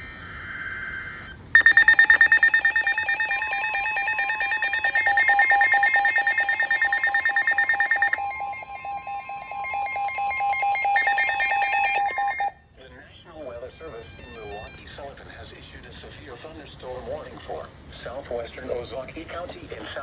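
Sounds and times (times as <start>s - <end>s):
buzzy data tone screech: 0.4s - 12.5s
pulsing electronic alert tone: 1.6s - 12.5s.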